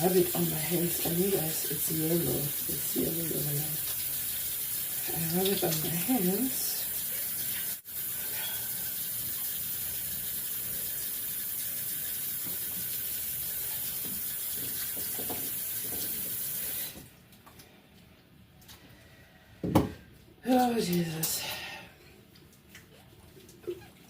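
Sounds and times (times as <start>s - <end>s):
tap water running into sink: 0.0s - 17.1s.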